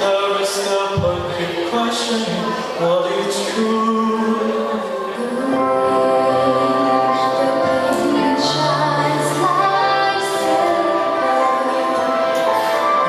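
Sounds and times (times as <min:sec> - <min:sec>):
musical accompaniment: 0:00.9 - 0:13.0
person singing long notes: 0:03.6 - 0:13.0.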